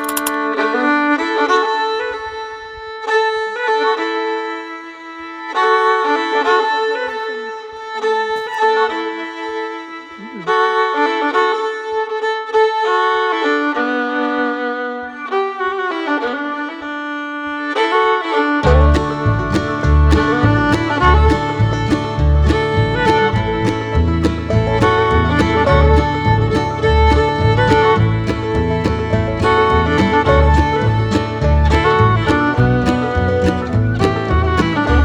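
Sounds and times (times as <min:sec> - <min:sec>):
fiddle melody: 0:00.0 - 0:35.0
bass notes: 0:18.6 - 0:35.0
light steady beat: 0:18.6 - 0:35.0.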